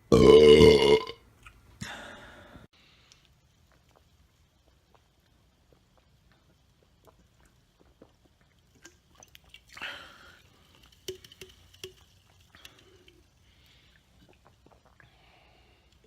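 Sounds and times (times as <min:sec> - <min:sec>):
wet mouth clicks: 0:14.2 - 0:15.2.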